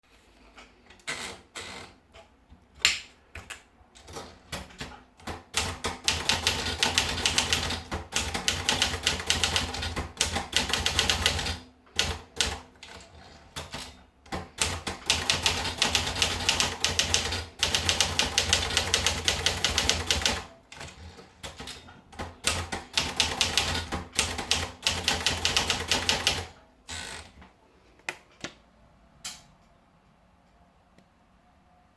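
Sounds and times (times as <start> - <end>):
manual typewriter typing: 4.0 - 27.3.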